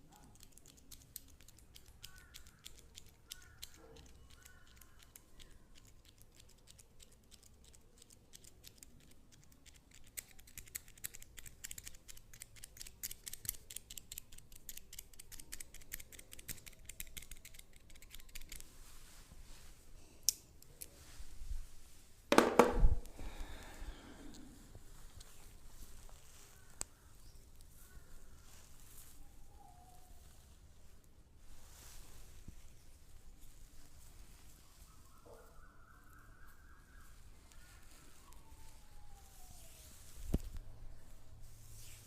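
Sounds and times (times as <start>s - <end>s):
massage clicking and crackling: 0.0s - 29.5s
loud thump: 22.3s - 23.1s.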